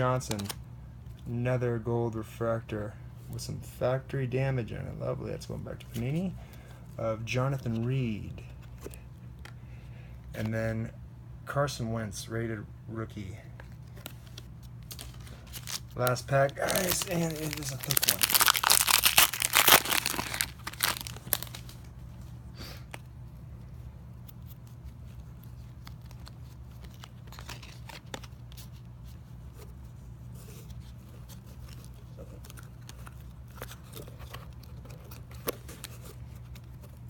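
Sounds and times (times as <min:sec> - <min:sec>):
cards being handled: 0:00.1 - 0:00.6, 0:13.5 - 0:23.1, 0:24.1 - 0:37.0
wrapper crinkling and tearing: 0:14.8 - 0:21.9, 0:25.8 - 0:28.4.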